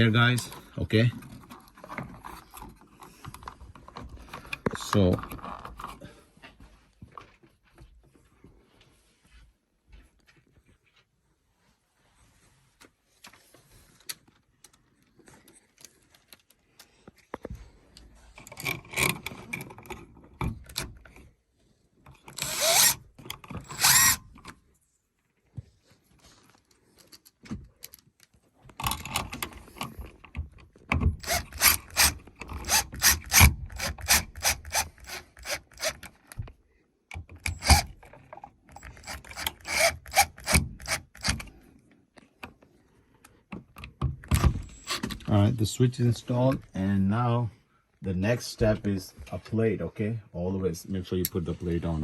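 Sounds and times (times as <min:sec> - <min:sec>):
screwdriver clicking: 0:22.3 - 0:23.0, 0:23.6 - 0:24.2, 0:31.2 - 0:36.1, 0:37.3 - 0:38.0, 0:38.7 - 0:41.5.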